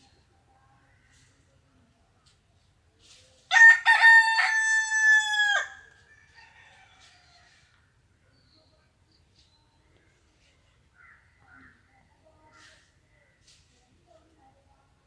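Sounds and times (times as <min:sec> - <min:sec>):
rooster crowing: 0:03.5 - 0:07.6.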